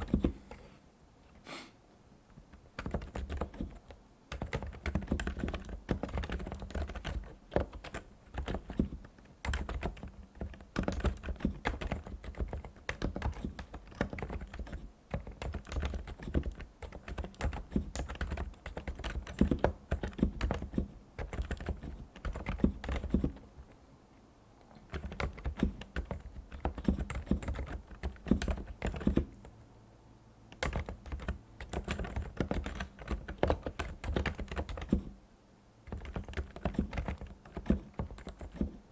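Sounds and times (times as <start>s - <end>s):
keyboard typing: 0.0s - 0.6s, 2.5s - 23.7s, 24.9s - 29.5s, 30.5s - 35.2s, 35.9s - 38.8s.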